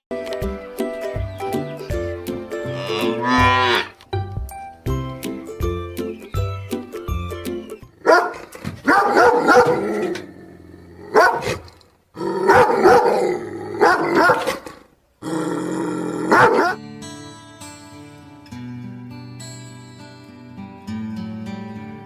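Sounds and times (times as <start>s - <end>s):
acoustic guitar music: 0.1s - 9.8s, 16.4s - 22.0s
dog barking: 8.0s - 10.0s, 11.1s - 11.7s, 12.5s - 14.8s, 16.3s - 16.8s.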